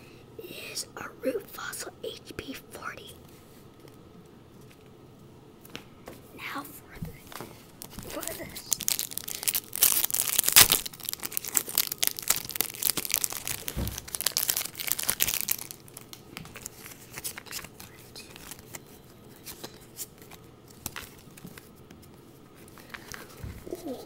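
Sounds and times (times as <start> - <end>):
cards being handled: 7.0 - 24.0
foil wrapper tearing and crinkling: 7.7 - 18.8.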